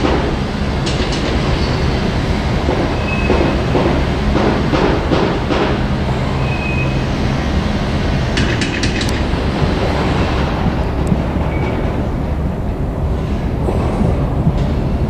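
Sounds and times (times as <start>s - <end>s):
sharp rail clicks: 0.0s - 6.2s, 6.8s - 12.1s
train wheels rumbling on rails: 0.0s - 15.0s.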